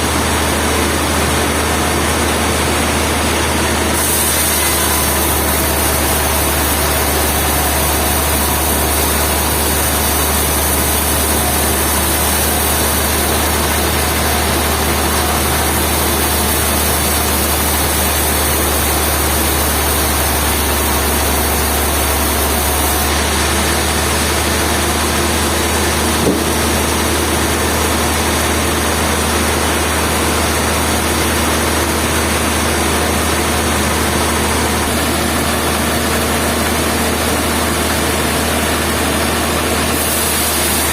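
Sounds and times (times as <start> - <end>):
sawmill machinery running: 0.0 - 40.9
small knock: 26.2 - 26.6.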